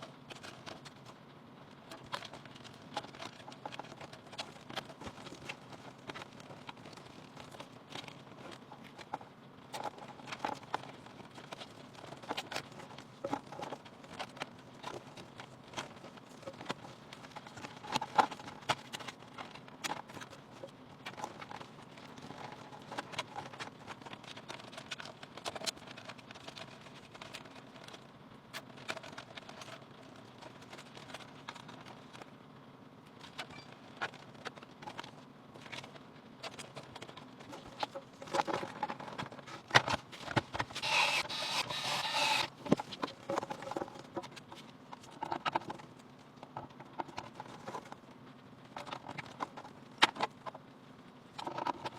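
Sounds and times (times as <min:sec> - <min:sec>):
computer parts clicking and knocking: 0:37.6 - 0:44.4.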